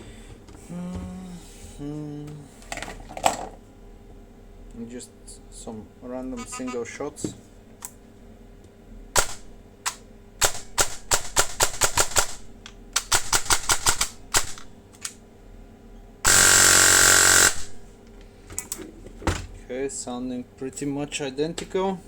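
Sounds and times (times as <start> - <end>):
airsoft gun firing: 9.2 - 9.5, 16.3 - 17.8.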